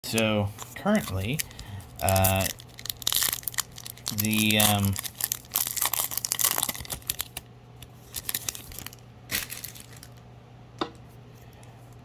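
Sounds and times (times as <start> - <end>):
foil wrapper crinkling and tearing: 0.1 - 10.2.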